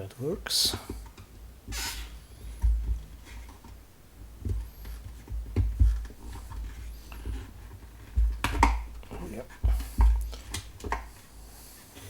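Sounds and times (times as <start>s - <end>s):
handling bumps: 4.3s - 11.2s.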